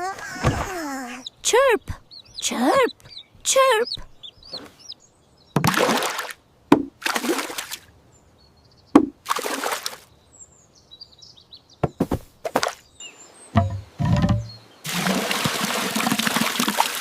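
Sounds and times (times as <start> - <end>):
cartoon water splashes: 5.6 - 6.3.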